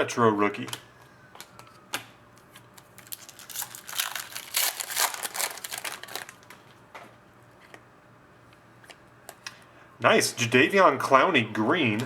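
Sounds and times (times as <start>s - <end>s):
foil wrapper crinkling: 2.6s - 6.7s.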